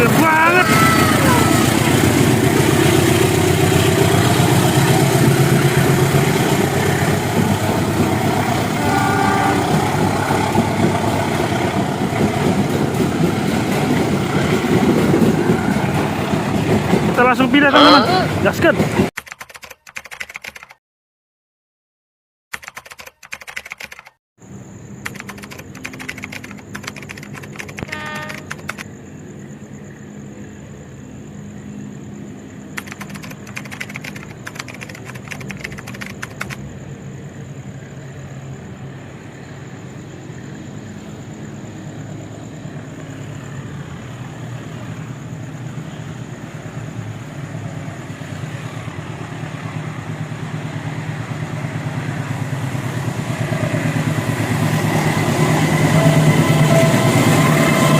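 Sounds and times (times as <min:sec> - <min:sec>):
diesel locomotive engine: 0:00.0 - 0:19.1, 0:24.4 - 0:57.9
rapid clicking: 0:19.2 - 0:20.8, 0:22.5 - 0:24.2, 0:25.0 - 0:28.9, 0:32.8 - 0:36.6.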